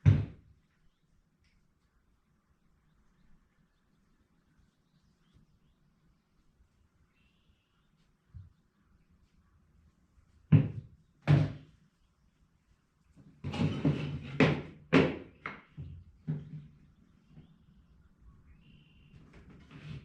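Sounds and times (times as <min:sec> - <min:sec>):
wood scraping: 0:13.4 - 0:15.1
wooden knocks: 0:13.4 - 0:17.6.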